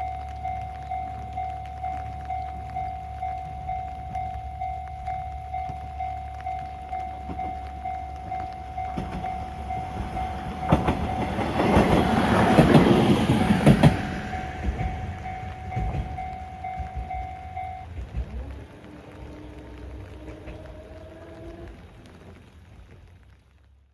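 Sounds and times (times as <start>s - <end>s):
level crossing bell ringing: 0.0s - 11.9s, 13.8s - 18.0s
diesel railcar passing: 0.0s - 23.6s
train wheels clicking over rail joints: 0.4s - 23.0s.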